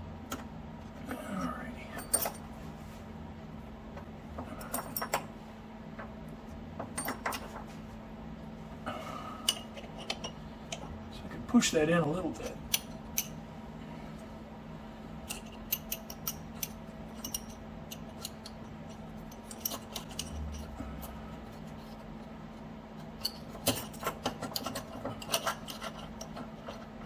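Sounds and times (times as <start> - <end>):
faint steady hum: 0.0 - 27.0
metal parts clicking and clinking: 1.9 - 2.5, 4.6 - 5.3, 6.9 - 7.6, 9.4 - 10.8, 12.4 - 13.4, 15.3 - 21.1, 23.2 - 26.8.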